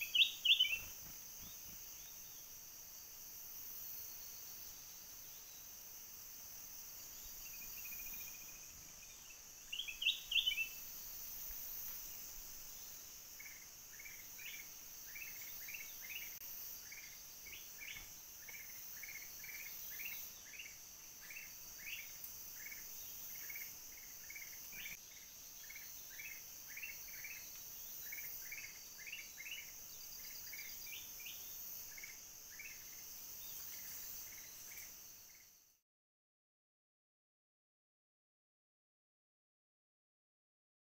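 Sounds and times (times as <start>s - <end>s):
bird calling: 0.0s - 1.7s, 9.7s - 10.8s
whistled bird notes: 0.0s - 2.2s
forest insects droning: 0.0s - 35.8s.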